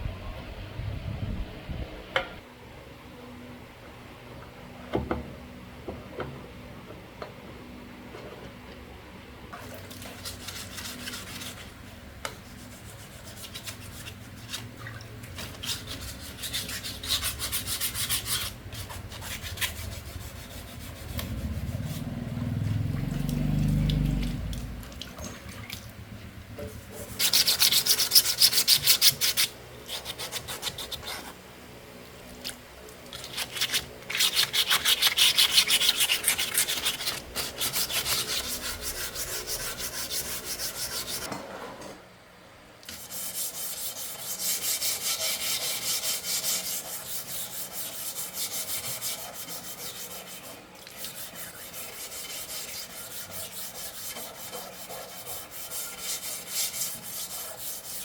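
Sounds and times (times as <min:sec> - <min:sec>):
rubbing strokes scraping rust: 0:10.1 - 0:14.8, 0:15.4 - 0:22.9, 0:26.6 - 0:31.4, 0:33.1 - 0:41.3, 0:42.9 - 0:58.0.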